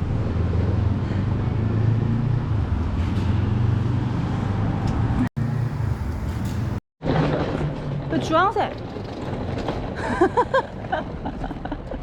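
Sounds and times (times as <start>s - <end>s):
city street traffic rumble: 0.0s - 12.0s.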